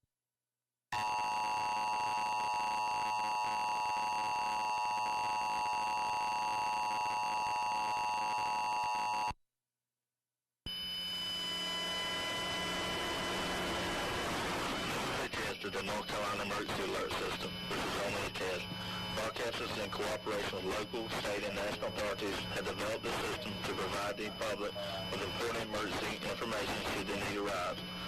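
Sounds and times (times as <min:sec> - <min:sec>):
hissing humming broadcast feed: 0:11.2 - 0:28.0.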